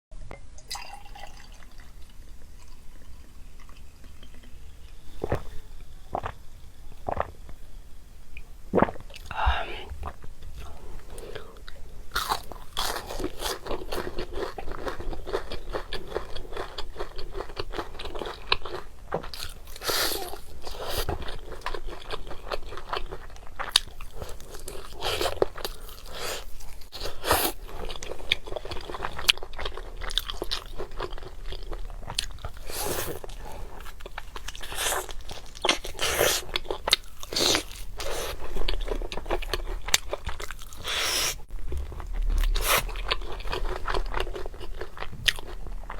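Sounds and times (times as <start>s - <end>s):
crunching and chewing crisp food: 2.6s - 7.7s, 8.3s - 45.9s.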